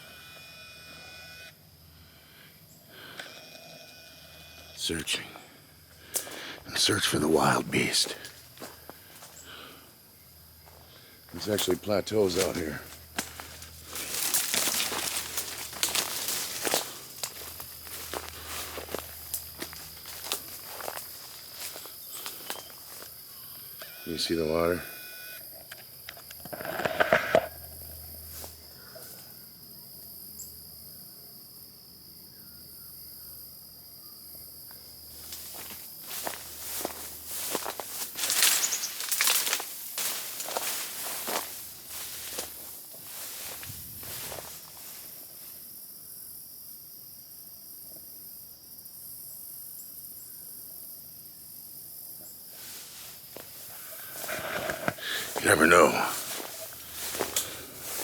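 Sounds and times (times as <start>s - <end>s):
insects trilling: 0.0s - 58.0s
rustling footsteps: 5.9s - 6.7s, 7.8s - 9.9s, 10.6s - 23.3s, 28.2s - 29.3s, 35.1s - 45.6s, 52.5s - 58.0s
twigs snapping: 12.4s - 21.0s, 36.8s - 41.4s, 56.3s - 58.0s.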